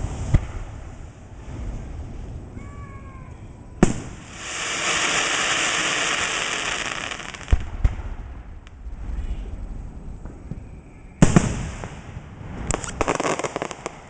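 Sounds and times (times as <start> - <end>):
firework bangs and pops: 0.0 - 1.6, 3.8 - 8.7, 11.2 - 14.0
firework crackling hiss: 0.0 - 8.2, 10.5 - 14.0.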